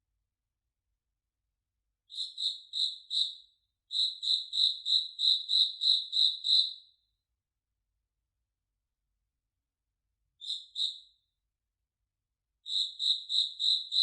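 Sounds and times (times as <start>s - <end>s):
cricket chirping: 2.1s - 6.8s, 10.4s - 11.1s, 12.6s - 14.0s.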